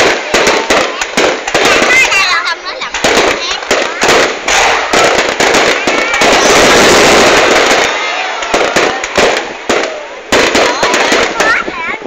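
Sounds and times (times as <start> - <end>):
crowd voices: 0.0 - 12.0
fireworks banging: 0.0 - 12.0.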